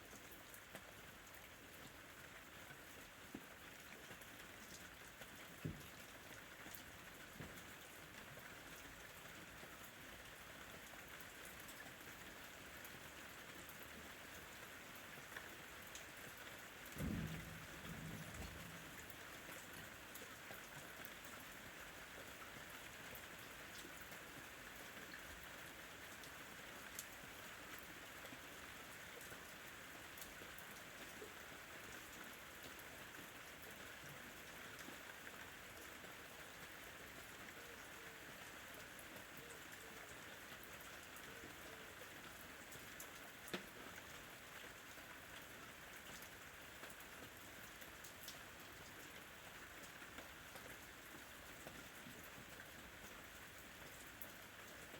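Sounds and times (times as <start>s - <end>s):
soft steady rain: 0.0s - 54.9s
raindrop ticks: 16.8s - 21.2s, 26.2s - 27.8s, 42.2s - 44.1s.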